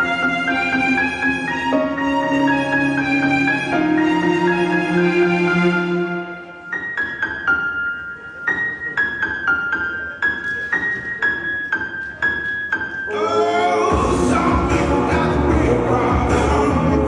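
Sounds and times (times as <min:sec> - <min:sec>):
slow piano melody: 0:00.0 - 0:15.9
sustained chords and deep bass: 0:13.9 - 0:17.0.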